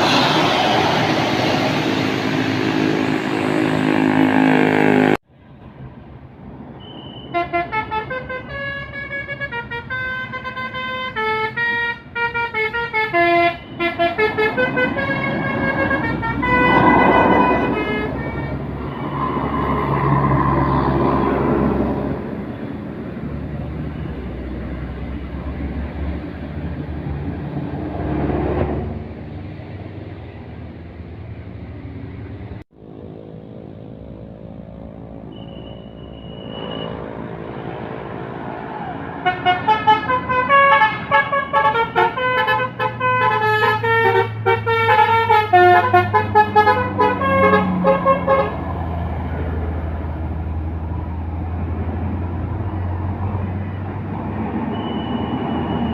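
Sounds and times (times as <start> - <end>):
bus engine running: 0.0 - 6.6
road noise: 0.0 - 55.9
multi-tone bus horn: 1.7 - 5.2, 6.8 - 18.8, 39.2 - 48.8.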